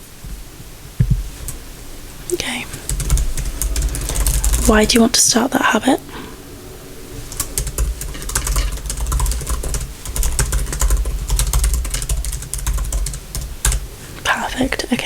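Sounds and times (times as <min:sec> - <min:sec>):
fast keyboard typing: 0:02.5 - 0:05.0, 0:07.3 - 0:13.9.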